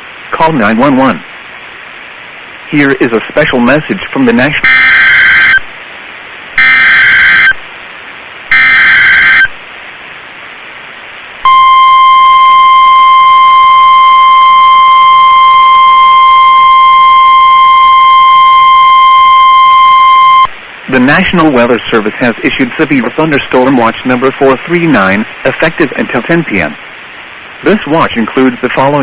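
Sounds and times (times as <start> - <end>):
digital data bursts: 4.4 - 5.7, 6.6 - 7.6, 8.5 - 9.6.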